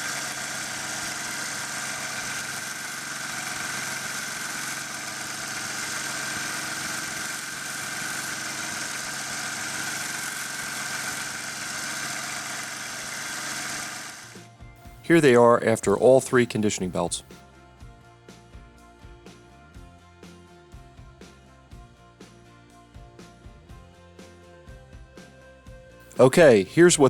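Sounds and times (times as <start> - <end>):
belt sander running: 0.0 - 15.0
high motor whine: 0.0 - 15.3.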